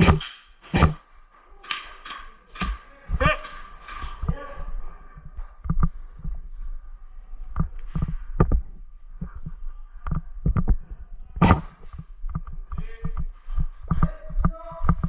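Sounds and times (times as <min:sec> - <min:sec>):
irregular thumps and sharp knocks: 0:00.0 - 0:04.4, 0:07.5 - 0:10.8, 0:11.4 - 0:15.0.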